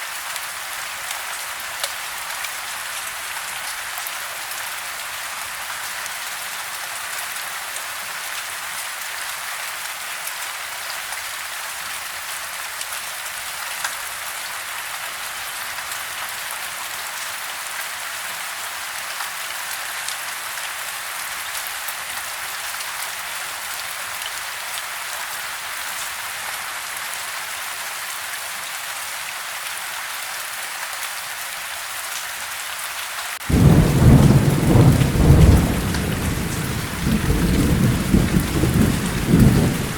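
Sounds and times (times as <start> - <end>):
rain falling: 0.0 - 39.9
thunder rumble: 33.5 - 39.9.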